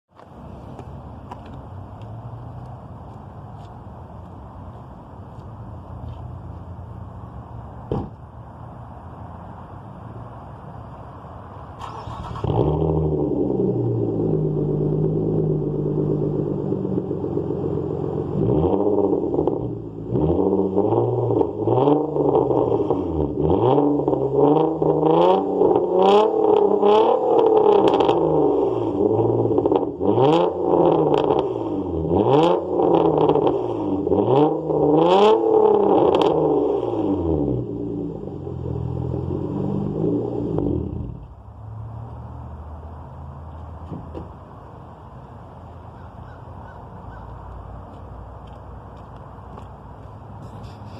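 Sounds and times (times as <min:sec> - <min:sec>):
exhaust cracks: 0:11.8 - 0:41.4
car engine revving: 0:11.8 - 0:43.1.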